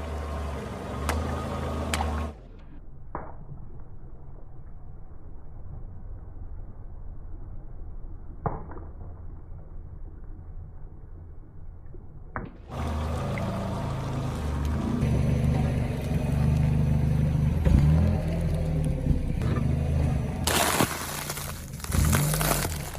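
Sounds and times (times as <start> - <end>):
liquid gushing and splashing: 20.4 - 22.9.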